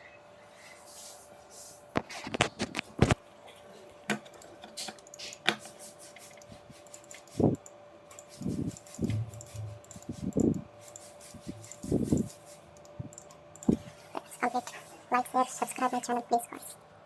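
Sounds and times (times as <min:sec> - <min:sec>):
faint steady hum: 0:00.0 - 0:17.0
computer parts clicking and knocking: 0:08.1 - 0:10.6.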